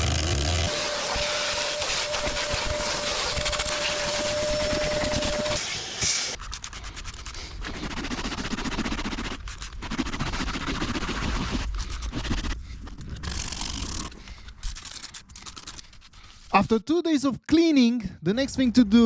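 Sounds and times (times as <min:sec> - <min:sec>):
crackly scratching and scrubbing: 0:06.4 - 0:16.5.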